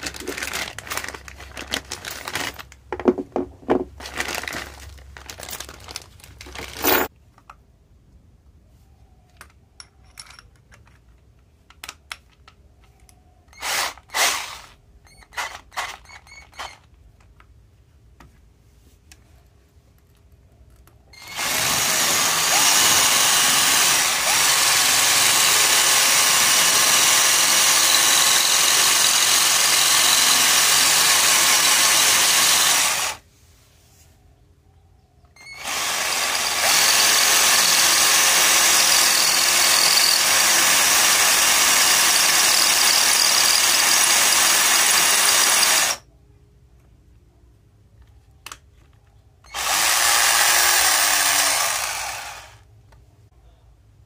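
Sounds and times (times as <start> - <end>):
cordless drill motor running: 13.6 - 16.8, 21.2 - 33.2, 35.4 - 46.0, 49.5 - 52.7.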